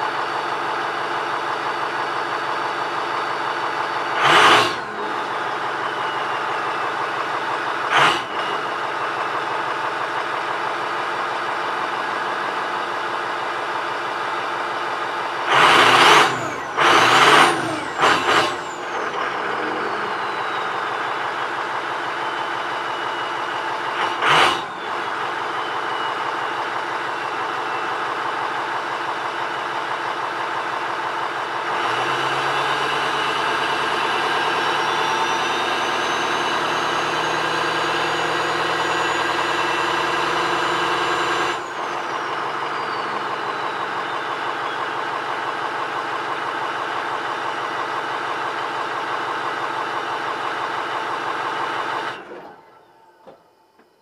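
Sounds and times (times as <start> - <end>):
diesel engine idling: 0.0 - 53.8
engine revving with rushing burst: 3.6 - 8.7, 15.4 - 25.5, 31.6 - 44.6
turbo whistling: 15.8 - 28.6, 32.1 - 45.5.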